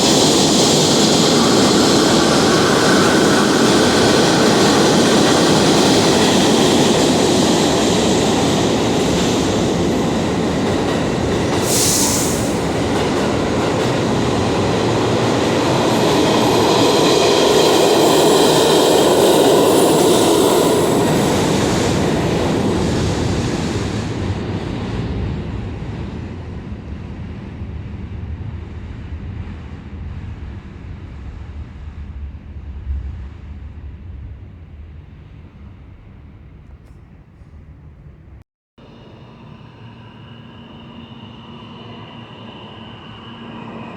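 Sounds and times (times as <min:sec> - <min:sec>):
subway train rumble and wheel clatter: 0:00.0 - 0:43.9
high-pitched burst: 0:11.6 - 0:13.1.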